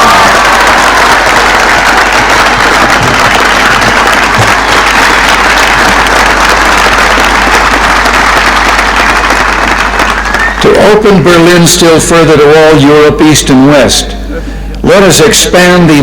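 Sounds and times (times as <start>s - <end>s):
large crowd applauding: 0.0s - 11.2s.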